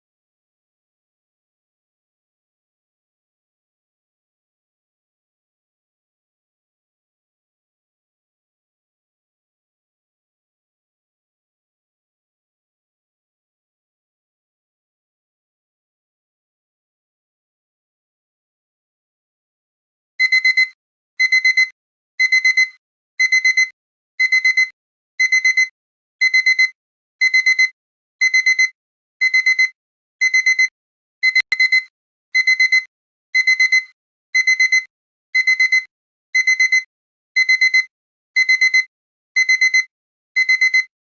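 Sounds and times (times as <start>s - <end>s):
alarm clock beeping: 20.2s - 40.9s.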